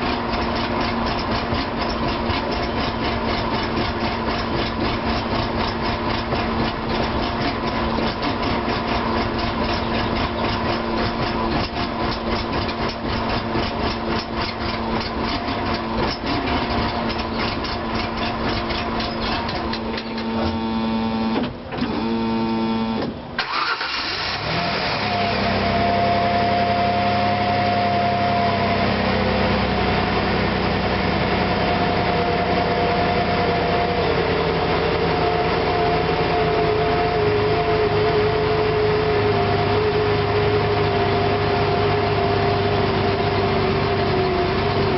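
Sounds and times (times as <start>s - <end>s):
car engine idling roughly: 0.0s - 20.5s.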